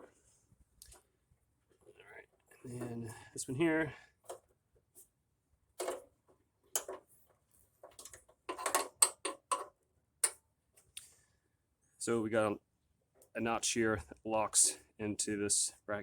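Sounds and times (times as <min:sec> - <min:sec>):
cable and bracket clicks and rattles: 0:05.8 - 0:07.1, 0:07.8 - 0:11.1.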